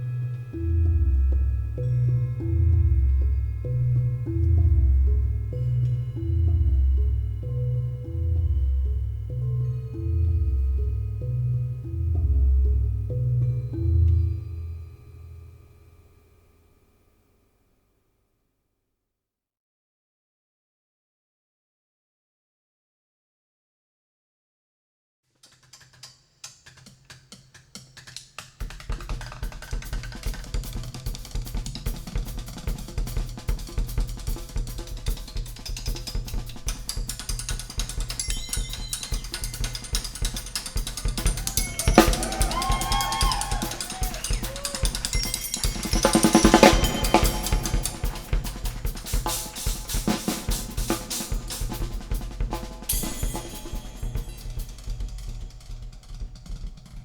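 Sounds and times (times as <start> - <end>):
drum beat music with heavy bass: 29.0 - 55.7.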